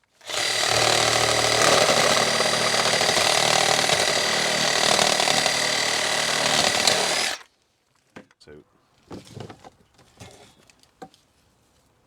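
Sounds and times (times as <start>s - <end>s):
power tool motor whining: 0.2s - 7.4s.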